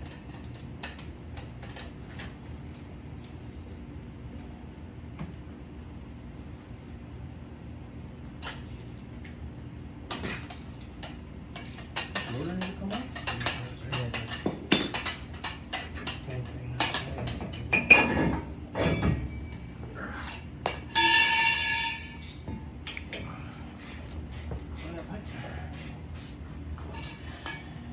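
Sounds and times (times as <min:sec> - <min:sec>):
high ringing squeal: 0:20.9 - 0:22.4.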